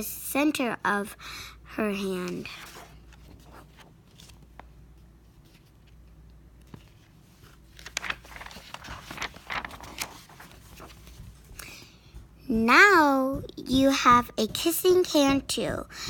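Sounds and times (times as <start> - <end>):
low steady hum: 0.0 - 16.0
handling rustling and taps: 7.8 - 16.0.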